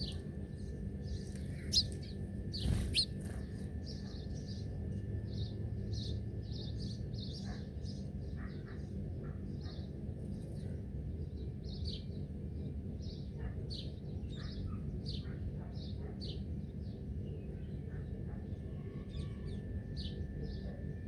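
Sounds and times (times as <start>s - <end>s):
small birds chirping: 0.0s - 12.3s, 13.0s - 21.0s
low background rumble: 0.0s - 13.2s.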